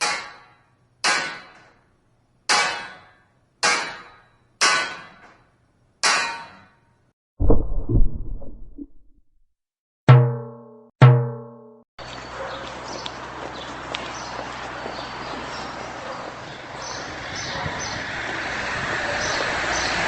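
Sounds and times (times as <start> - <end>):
muffled underwater explosion: 7.4 - 9.4.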